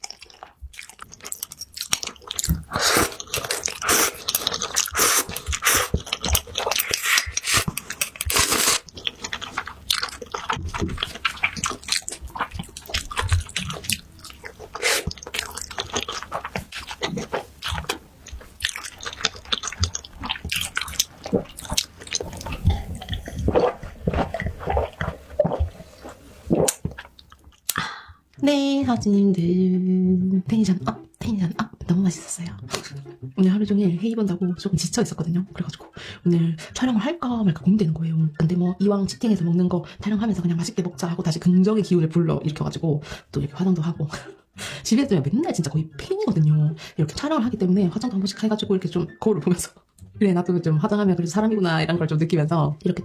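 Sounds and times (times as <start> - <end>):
person chewing noodles: 0.0 - 27.8.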